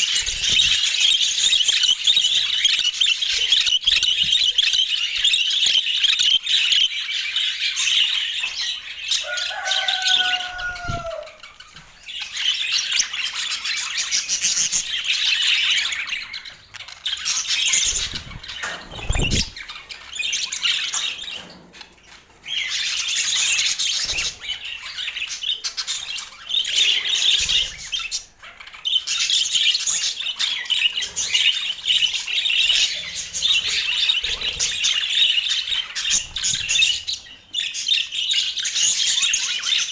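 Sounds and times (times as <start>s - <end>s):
budgerigars chattering and warbling: 0.0s - 39.9s.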